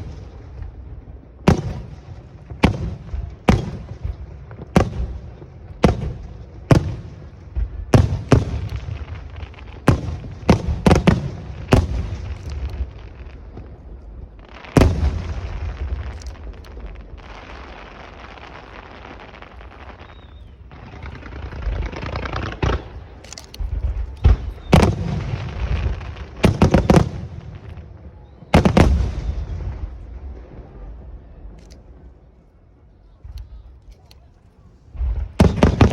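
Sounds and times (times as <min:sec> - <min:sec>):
fireworks booming: 0:00.0 - 0:33.8, 0:34.8 - 0:35.9
fireworks hissing: 0:14.4 - 0:27.7.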